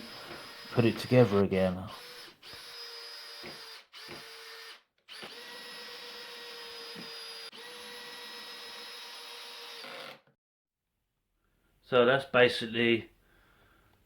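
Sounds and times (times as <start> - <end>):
cordless drill driving screws: 0.0 - 10.3.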